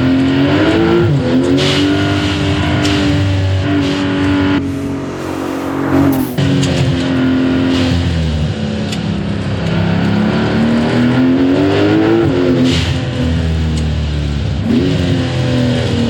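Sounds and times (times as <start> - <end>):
car engine accelerating: 0.0 - 16.0
rush of noise: 3.9 - 8.4.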